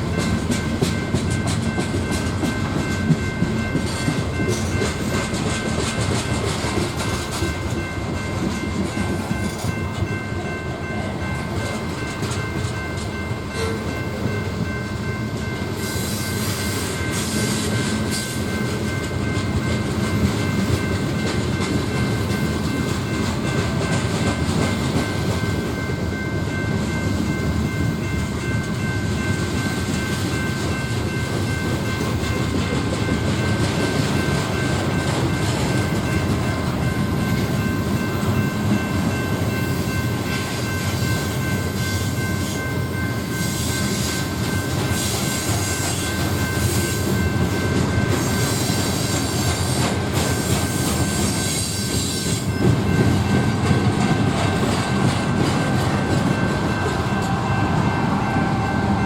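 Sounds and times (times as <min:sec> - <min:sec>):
train wheels rumbling on rails: 0:00.0 - 0:59.0.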